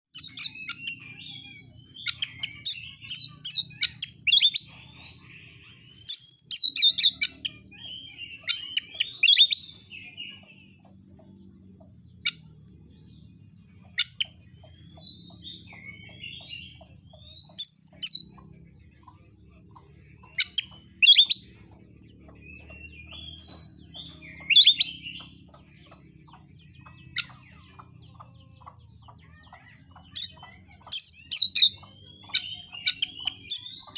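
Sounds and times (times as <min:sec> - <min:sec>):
bird whistling and chirping: 0:00.2 - 0:10.5, 0:13.3 - 0:18.4, 0:20.2 - 0:21.7, 0:22.5 - 0:27.9, 0:29.5 - 0:33.9.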